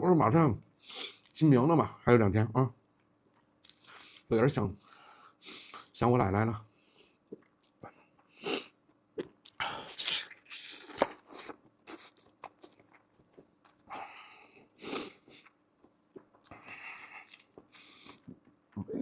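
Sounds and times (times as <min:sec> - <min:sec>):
person chewing: 0:03.3 - 0:04.2, 0:07.2 - 0:18.7.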